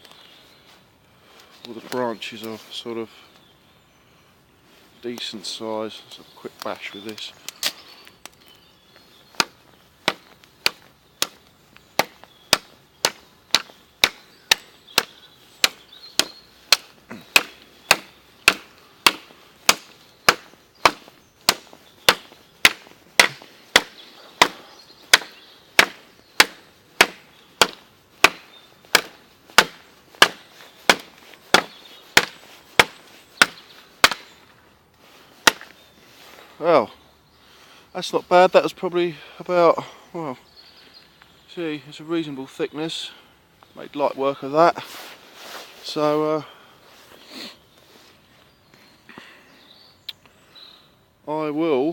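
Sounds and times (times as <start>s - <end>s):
machete chopping wood: 9.4s - 34.4s, 35.4s - 35.8s.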